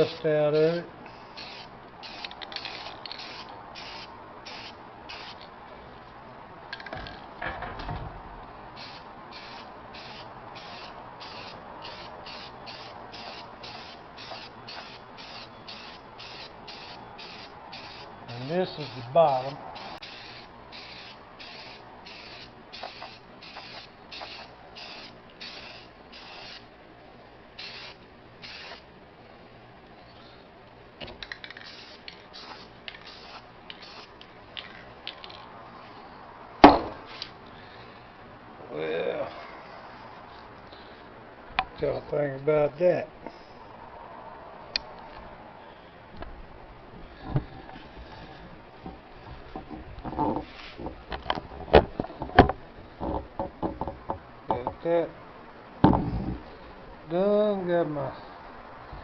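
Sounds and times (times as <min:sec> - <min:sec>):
spray-paint can hissing: 0:01.4 - 0:05.4, 0:08.8 - 0:18.1, 0:18.7 - 0:26.7, 0:27.6 - 0:28.9, 0:31.2 - 0:34.2.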